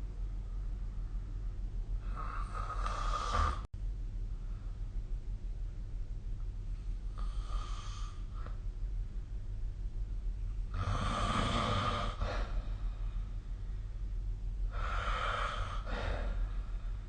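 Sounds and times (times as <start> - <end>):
steady low hum: 0.0 - 17.0
person snoring: 2.0 - 3.7, 10.7 - 12.6, 14.7 - 16.5.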